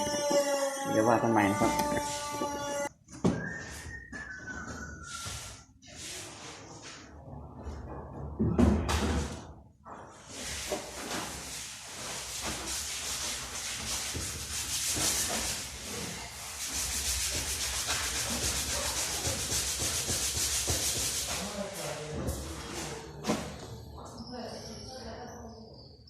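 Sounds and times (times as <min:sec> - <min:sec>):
sandpaper rubbing on wood: 0:00.1 - 0:02.9, 0:10.4 - 0:21.9.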